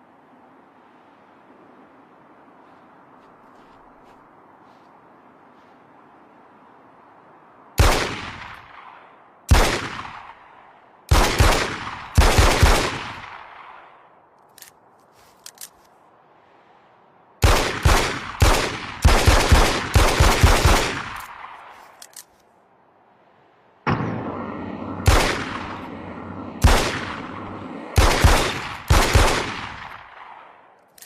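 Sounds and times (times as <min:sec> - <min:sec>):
pistol shots echoing: 0:07.8 - 0:14.0, 0:17.4 - 0:21.7, 0:23.9 - 0:30.7
faint clicks: 0:14.3 - 0:16.0, 0:21.2 - 0:22.6.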